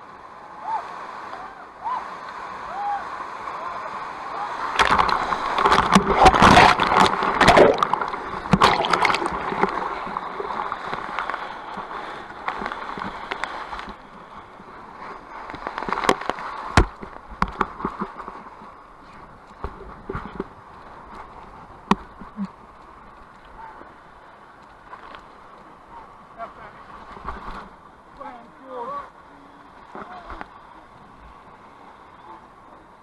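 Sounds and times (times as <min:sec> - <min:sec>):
river rushing: 0:00.0 - 0:19.4
water splashing: 0:03.3 - 0:32.8.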